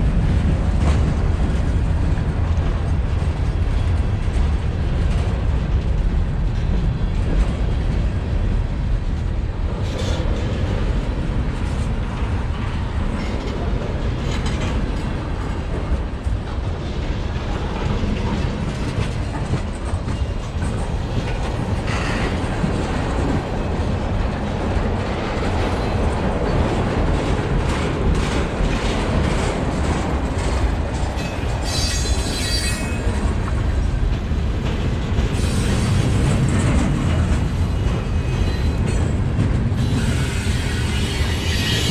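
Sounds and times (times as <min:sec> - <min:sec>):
wheels rumbling on rail: 0:00.0 - 0:41.9
clicking over rail joints: 0:09.9 - 0:40.2.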